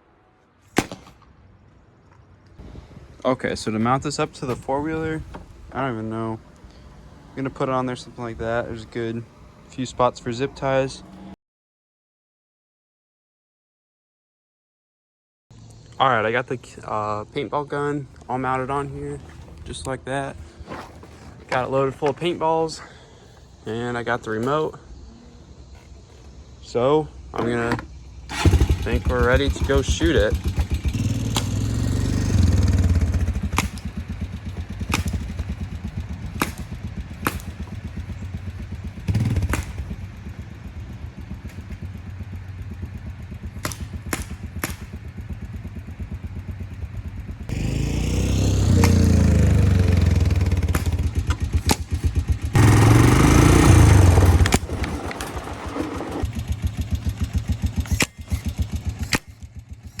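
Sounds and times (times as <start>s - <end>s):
paintball gun pops: 0.8s - 1.3s, 33.5s - 33.9s
atv engine idling and revving: 2.6s - 11.4s, 15.6s - 60.0s.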